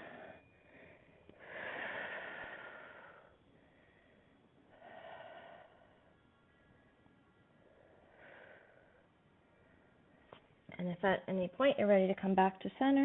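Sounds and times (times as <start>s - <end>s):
woman breathing through nose: 0.0s - 6.1s.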